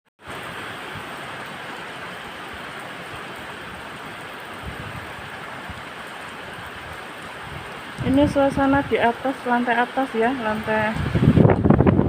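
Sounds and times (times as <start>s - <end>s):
wind and rain hiss: 0.2s - 12.0s
wind buffeting microphone: 3.6s - 9.5s, 10.1s - 12.0s.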